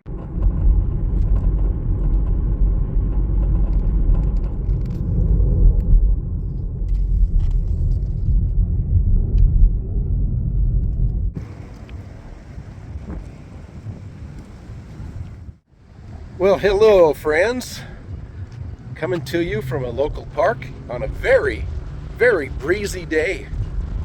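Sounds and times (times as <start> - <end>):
wind buffeting microphone: 0.0 - 24.0.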